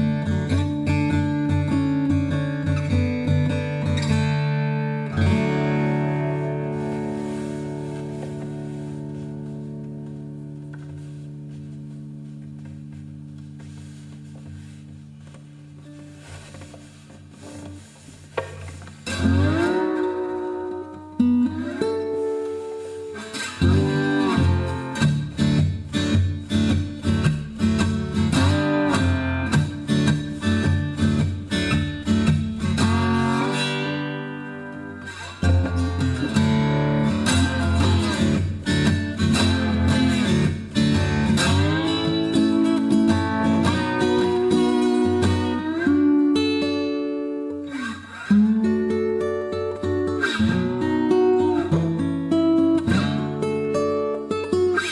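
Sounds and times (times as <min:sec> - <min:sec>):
acoustic guitar strummed and picked: 0:00.0 - 0:54.9.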